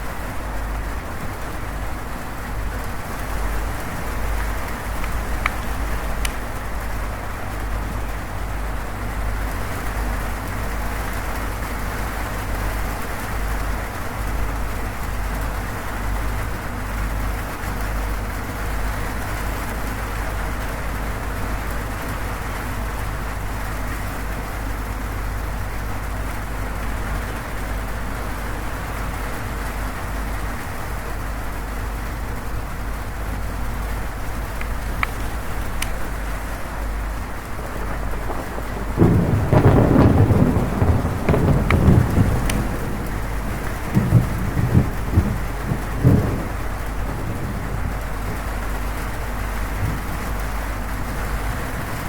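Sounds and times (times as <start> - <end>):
rain on a metal roof: 0.0 - 52.0
deep constant rumble: 21.5 - 52.0.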